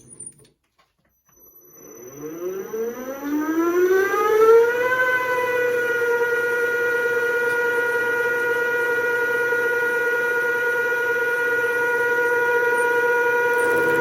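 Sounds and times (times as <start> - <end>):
milling machine spindle whine: 1.3 - 14.0.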